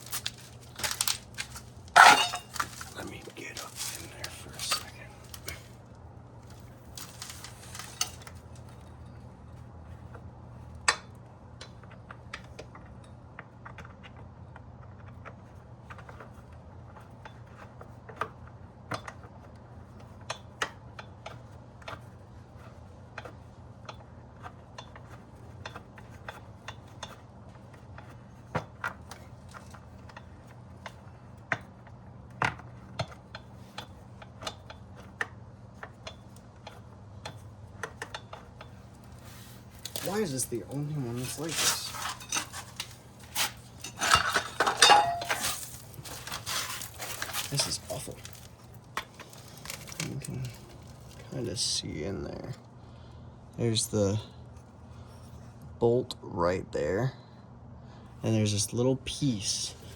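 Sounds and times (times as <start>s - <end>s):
steady low hum: 0.0s - 11.7s, 26.4s - 59.9s.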